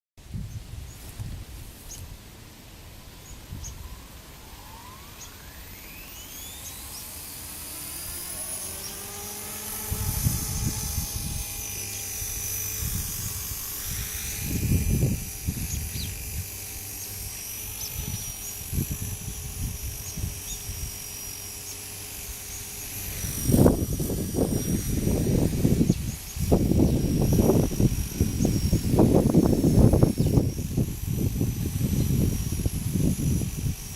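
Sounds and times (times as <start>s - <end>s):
rc helicopter motor and rotor whine: 0.3s - 33.9s
wind buffeting microphone: 9.5s - 33.9s.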